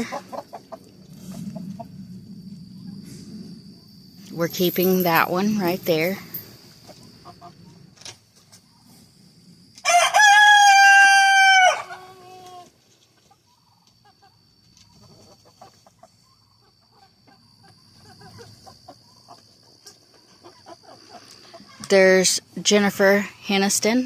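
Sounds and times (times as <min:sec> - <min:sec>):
hens clucking: 0:00.0 - 0:02.2, 0:06.8 - 0:09.0, 0:11.8 - 0:22.0
rooster crowing: 0:09.8 - 0:12.6.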